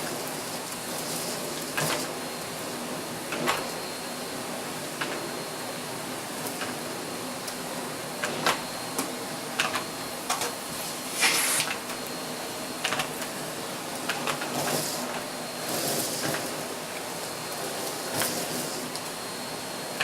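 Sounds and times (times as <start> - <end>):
short hissing rushes: 11.0 - 11.8.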